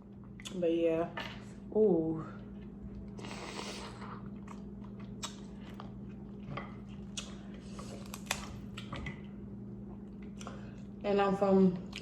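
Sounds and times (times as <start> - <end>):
low steady hum: 0.0 - 12.0
chewing and mouth sounds: 2.4 - 11.0
crab shell cracking: 7.2 - 8.9.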